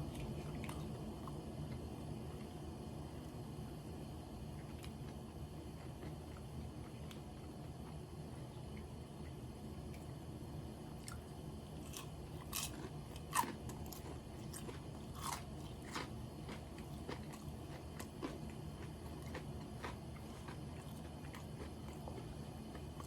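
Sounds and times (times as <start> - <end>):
crisp crunching bites: 11.8 - 17.5
wet chewing: 11.8 - 23.0.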